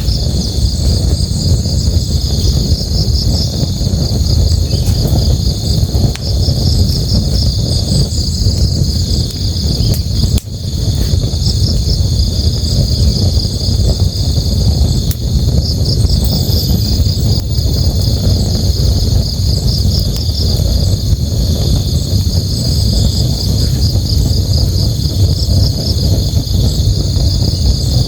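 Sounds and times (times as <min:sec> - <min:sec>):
campfire crackling: 0:00.0 - 0:28.0
crickets chirping: 0:00.0 - 0:28.0.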